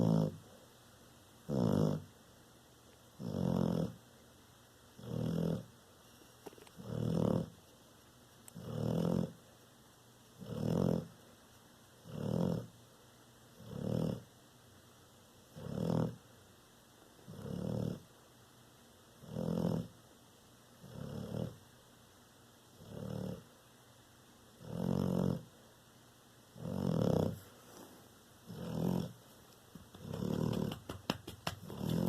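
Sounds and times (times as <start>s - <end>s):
dog snoring: 0.0s - 0.5s, 1.5s - 2.1s, 3.2s - 4.0s, 5.0s - 5.7s, 6.8s - 7.6s, 8.5s - 9.4s, 10.4s - 11.2s, 12.0s - 12.8s, 13.6s - 14.3s, 15.5s - 16.2s, 17.2s - 18.1s, 19.2s - 20.0s, 20.8s - 21.6s, 22.8s - 23.5s, 24.6s - 25.5s, 26.6s - 29.2s, 29.9s - 30.9s, 31.6s - 32.0s.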